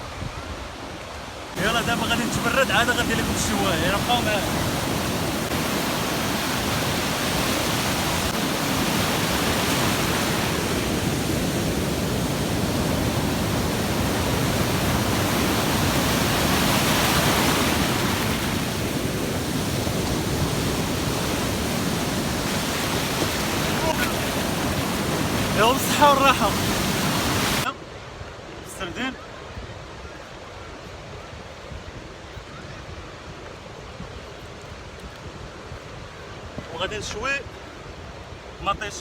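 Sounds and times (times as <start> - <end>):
sea surf washing onto shore: 0.0 - 29.7.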